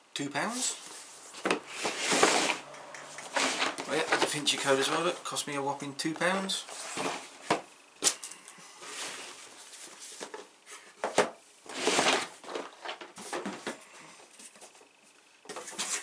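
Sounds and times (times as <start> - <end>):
cardboard sliding rustle: 0.8 - 2.6, 3.3 - 4.4, 6.7 - 7.6, 8.8 - 10.9, 11.7 - 13.7.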